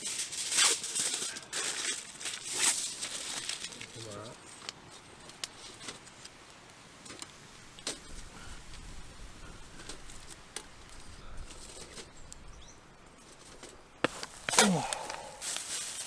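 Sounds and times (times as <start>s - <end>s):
wood fire crackling: 0.0s - 16.0s
faint hiss: 13.3s - 16.0s.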